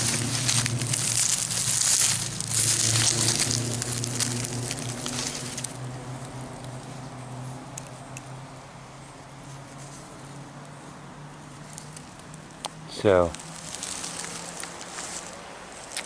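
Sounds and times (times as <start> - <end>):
dry leaves crunching: 0.0 - 16.0
low steady hum: 0.0 - 16.0.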